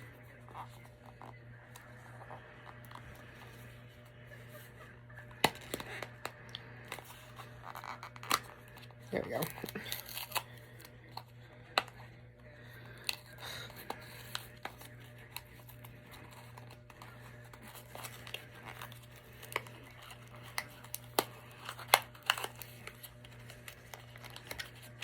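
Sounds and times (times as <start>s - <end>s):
faint low hum: 0.0s - 25.0s
packaging crinkling and tearing: 5.2s - 11.3s, 12.8s - 25.0s.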